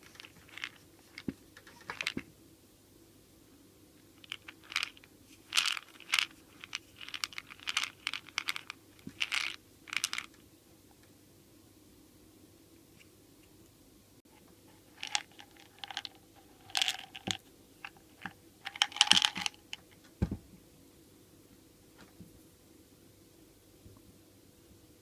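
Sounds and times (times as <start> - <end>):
tablets rattling in bottle: 0.0 - 2.2, 4.2 - 10.4, 14.9 - 19.8.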